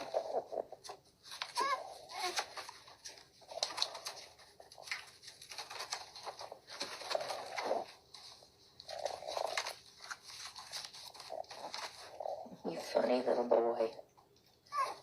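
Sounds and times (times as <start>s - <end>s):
puppies whining: 0.0s - 8.0s, 14.6s - 15.0s
puppies grunting: 0.0s - 13.9s, 14.7s - 15.0s.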